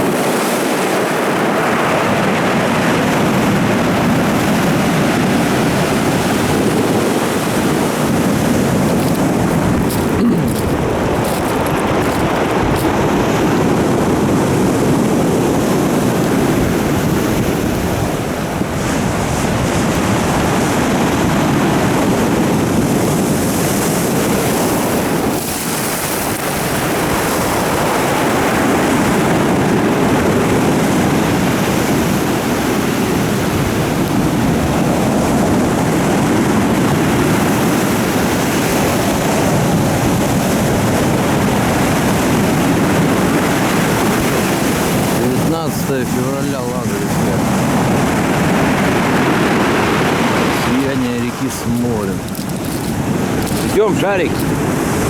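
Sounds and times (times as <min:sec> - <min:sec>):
surf breaking on shore: 0:00.0 - 0:55.0
wind buffeting microphone: 0:00.0 - 0:55.0.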